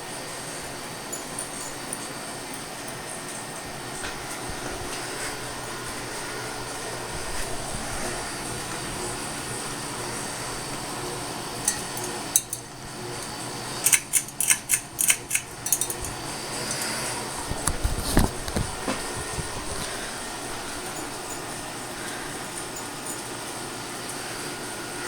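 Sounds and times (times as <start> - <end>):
ceiling fan motor buzz: 0.0 - 25.0
sharp clicks and rattles: 11.6 - 19.9.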